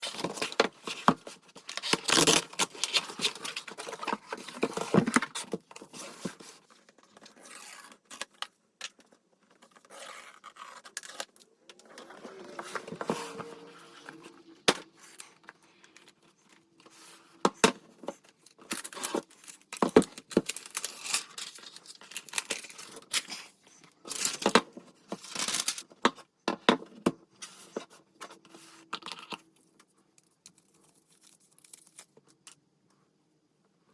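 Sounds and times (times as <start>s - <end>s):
packaging tearing and crinkling: 0.0s - 5.4s, 18.6s - 23.4s.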